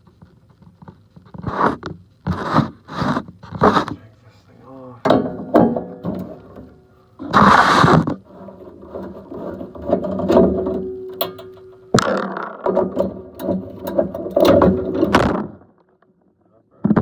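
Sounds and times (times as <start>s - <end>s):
metal clicks and knocks: 5.0s - 7.4s, 8.1s - 16.0s.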